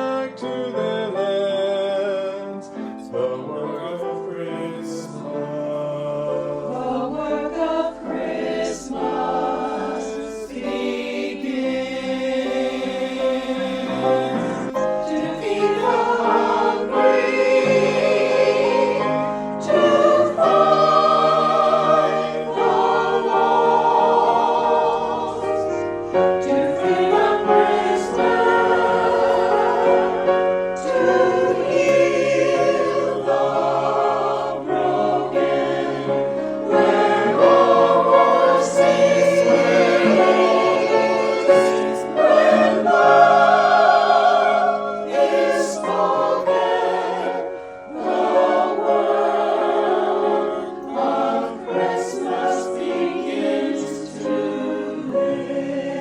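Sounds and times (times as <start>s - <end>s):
choir singing in harmony: 0.0s - 56.0s
singers breathing: 14.3s - 15.0s, 19.2s - 19.6s.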